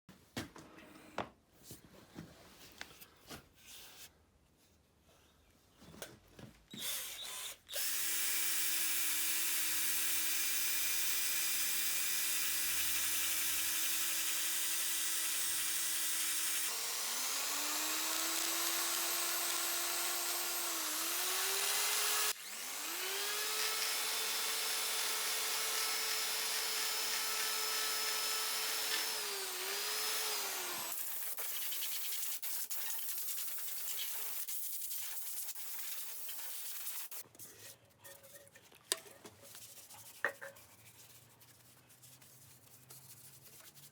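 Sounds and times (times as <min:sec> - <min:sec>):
power tool motor whining: 0:06.7 - 0:31.0.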